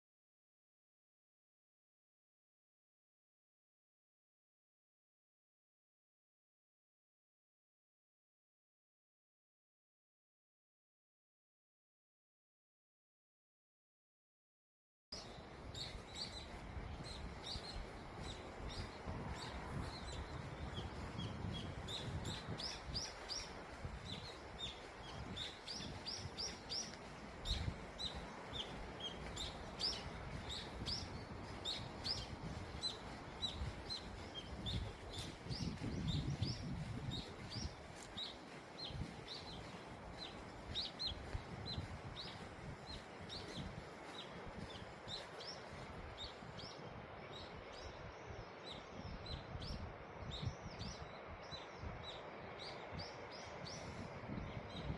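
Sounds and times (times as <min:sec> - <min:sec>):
small birds chirping: 0:15.2 - 0:54.9.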